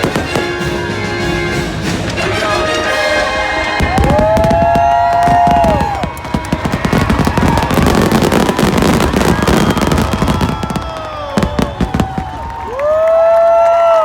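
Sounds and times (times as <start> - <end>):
music: 0.0 - 7.3
fireworks bursts and crackling: 0.0 - 14.0.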